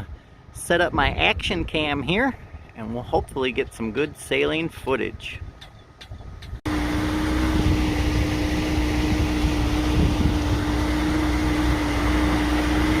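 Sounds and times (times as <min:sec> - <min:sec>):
outboard motor running: 0:06.6 - 0:13.0.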